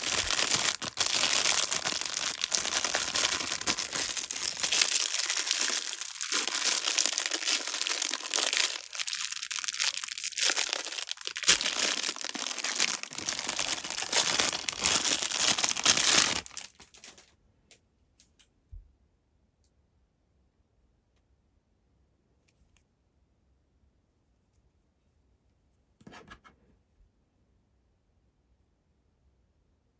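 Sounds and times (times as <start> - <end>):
packaging crinkled and torn: 0.0 - 17.3.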